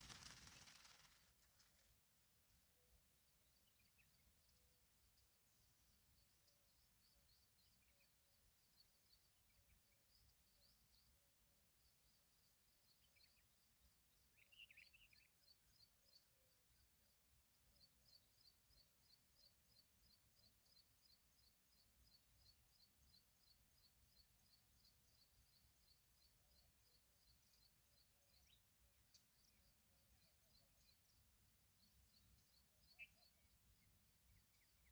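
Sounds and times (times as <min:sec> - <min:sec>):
rapid high-pitched chirping: 0:00.0 - 0:01.7.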